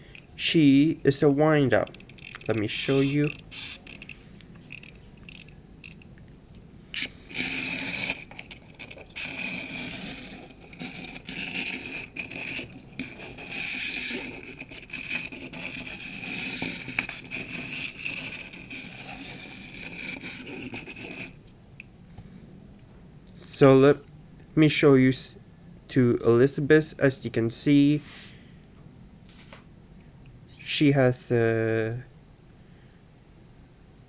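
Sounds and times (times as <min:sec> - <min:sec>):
clockwork motor whirring: 0:01.8 - 0:06.0, 0:07.0 - 0:21.4.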